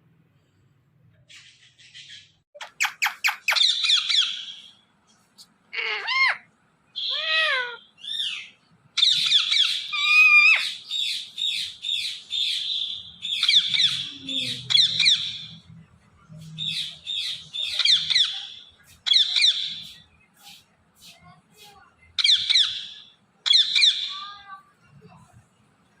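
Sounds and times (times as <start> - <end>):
parrot squawking: 2.6 - 4.7, 5.7 - 15.6, 16.6 - 20.0, 22.2 - 24.4.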